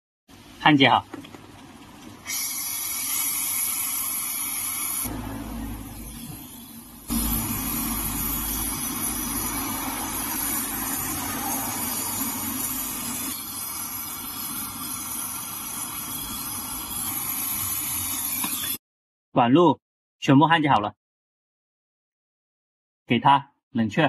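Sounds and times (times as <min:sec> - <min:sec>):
brazing torch flame hissing: 0:02.2 - 0:18.8.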